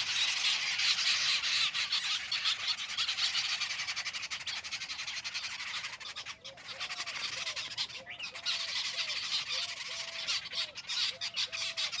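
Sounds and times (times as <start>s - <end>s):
birds rasping chatter: 0.0s - 12.0s.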